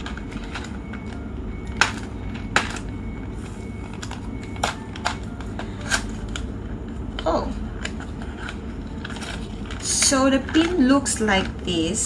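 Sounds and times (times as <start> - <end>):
steady low hum: 0.0 - 12.0
packaging being opened by hand: 7.2 - 11.7.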